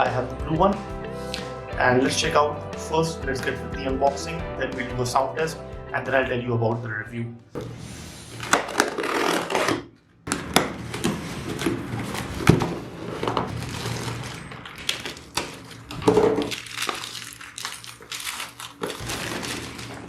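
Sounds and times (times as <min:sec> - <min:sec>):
packaging crinkling and rustling: 0:08.2 - 0:20.0
packaging clicks and knocks: 0:08.4 - 0:20.0.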